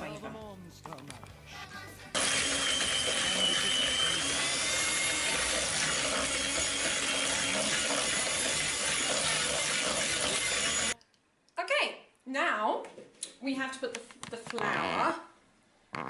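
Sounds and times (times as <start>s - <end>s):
electric mixer running: 2.2s - 11.0s.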